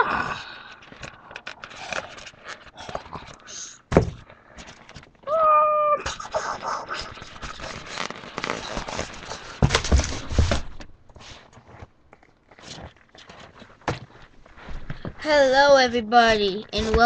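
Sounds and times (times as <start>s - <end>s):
rustling and scraping handling: 0.7s - 5.2s, 6.1s - 17.0s
sharp knocks: 3.9s - 4.2s.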